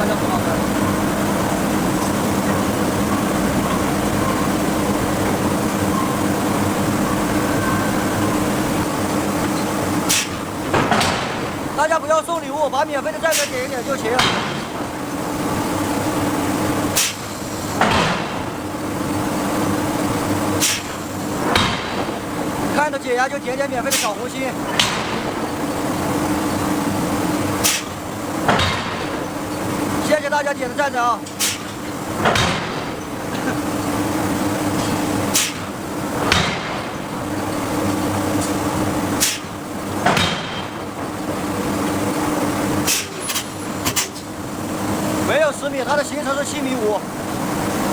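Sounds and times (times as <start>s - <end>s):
steady low hum: 0.0s - 47.9s
hydraulic hammer striking steel: 0.8s - 12.5s, 13.2s - 15.0s, 16.9s - 18.6s, 20.5s - 22.9s, 23.6s - 25.6s, 27.4s - 29.6s, 31.2s - 33.6s, 34.7s - 37.6s, 38.4s - 41.1s, 42.8s - 44.3s
forging hammer blows on steel: 2.5s - 14.9s.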